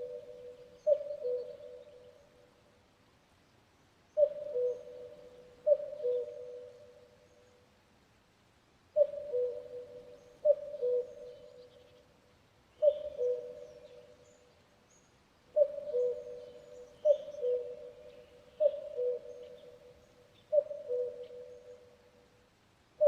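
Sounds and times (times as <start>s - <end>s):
cuckoo calling: 0.0s - 2.2s, 4.2s - 7.0s, 9.0s - 11.9s, 12.8s - 14.3s, 15.6s - 22.0s
small birds chirping: 12.7s - 21.6s.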